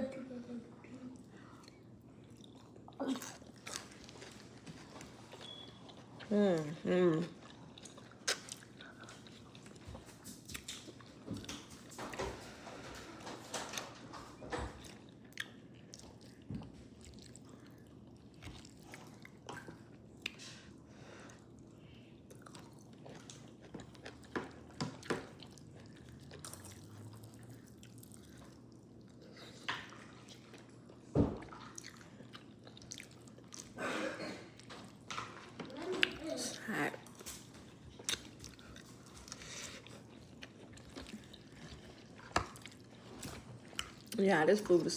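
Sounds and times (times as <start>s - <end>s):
person chewing food: 1.2s - 12.6s, 14.6s - 33.9s, 36.9s - 44.2s
lip smacks: 8.2s - 8.7s.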